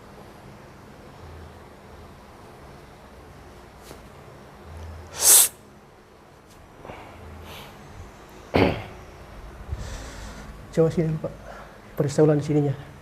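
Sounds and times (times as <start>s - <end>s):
person forceful burst of breath: 5.1s - 5.5s.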